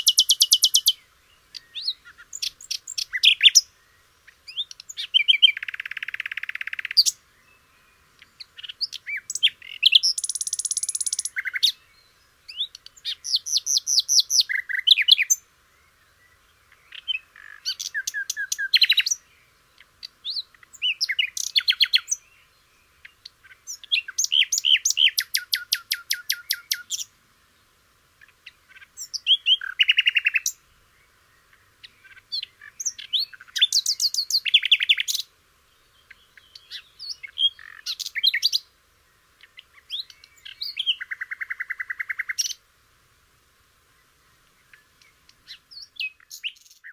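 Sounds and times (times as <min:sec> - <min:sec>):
bird trills: 0:00.0 - 0:03.7, 0:08.2 - 0:11.8.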